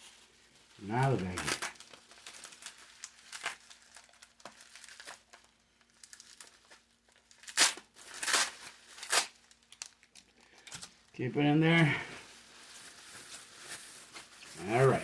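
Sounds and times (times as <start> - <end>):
plastic baggies crinkling: 0.0 - 15.0.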